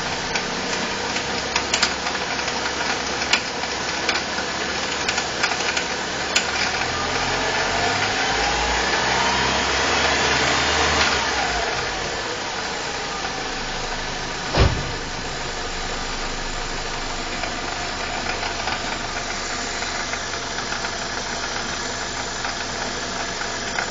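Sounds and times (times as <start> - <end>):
engine rattle and ticking: 0.0 - 8.5, 11.3 - 23.9
car engine revving: 6.6 - 22.8
thump: 14.5 - 15.3.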